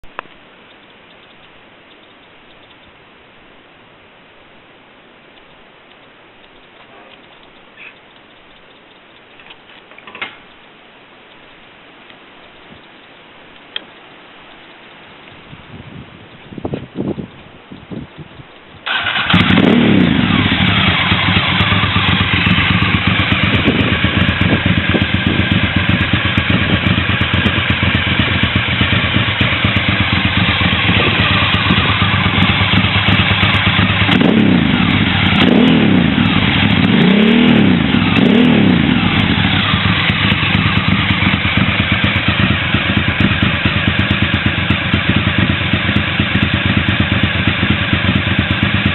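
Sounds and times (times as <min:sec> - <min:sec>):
motorcycle engine idling and revving: 0:16.6 - 0:48.9.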